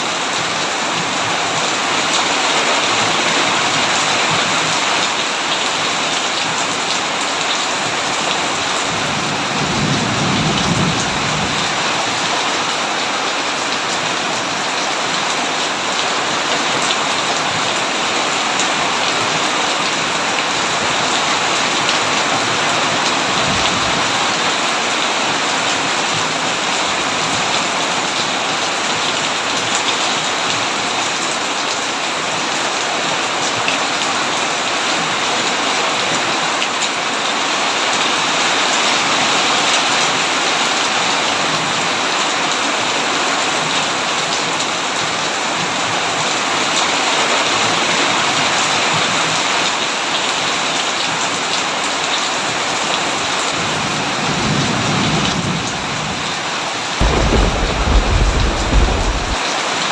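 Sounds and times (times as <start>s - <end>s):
heavy rain on a tin roof: 0.0s - 59.9s
thunder rumbling: 57.0s - 59.4s.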